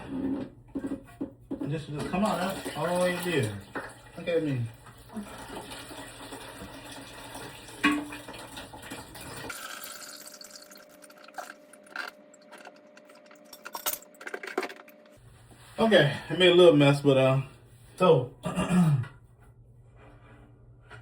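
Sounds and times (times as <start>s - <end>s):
water running and splashing: 2.2s - 12.0s
water dripping: 2.3s - 12.5s.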